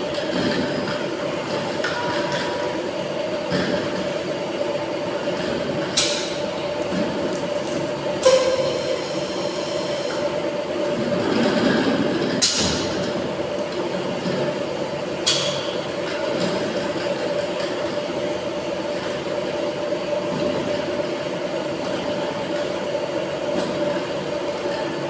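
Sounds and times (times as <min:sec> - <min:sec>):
machine humming: 0:00.0 - 0:25.0.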